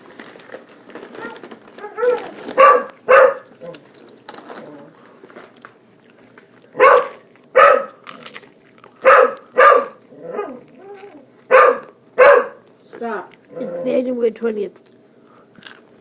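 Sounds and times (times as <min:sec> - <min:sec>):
dog barking: 0:01.2 - 0:03.5, 0:06.8 - 0:08.0, 0:09.0 - 0:10.6, 0:11.5 - 0:12.6
dog whimpering: 0:10.2 - 0:11.3, 0:13.5 - 0:14.0.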